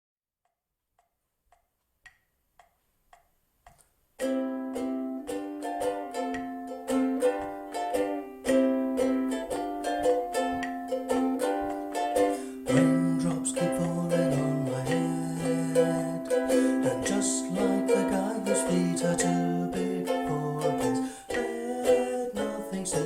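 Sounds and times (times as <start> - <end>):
faint ticks: 1.0 - 3.9
ukulele strumming: 4.2 - 23.0.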